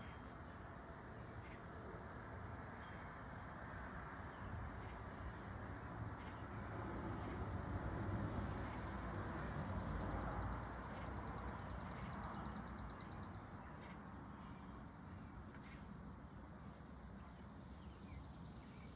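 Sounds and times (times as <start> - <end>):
bird singing a rapid trill: 7.6 - 13.8, 16.7 - 18.9.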